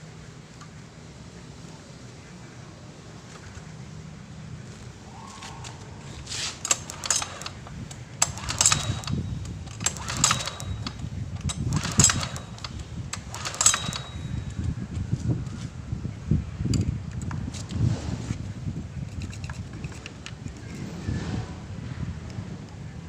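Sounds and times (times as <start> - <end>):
engine turning over: 6.2 - 14.8
starter cord pulled: 6.3 - 14.8.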